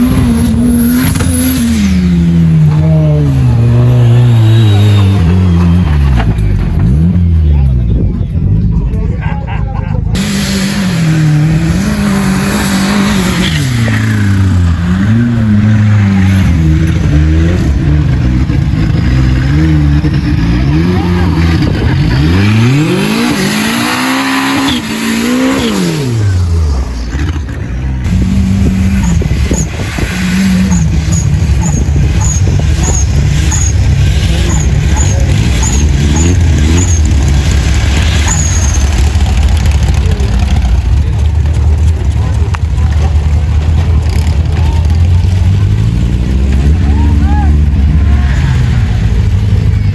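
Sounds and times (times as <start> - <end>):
off-road vehicle engine revving: 0.0 - 9.1, 10.1 - 49.9.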